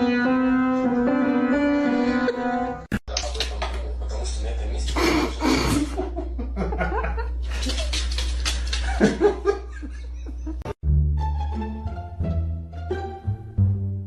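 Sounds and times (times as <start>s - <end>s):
music: 0.0s - 2.9s, 10.8s - 14.0s
people laughing: 4.9s - 10.8s.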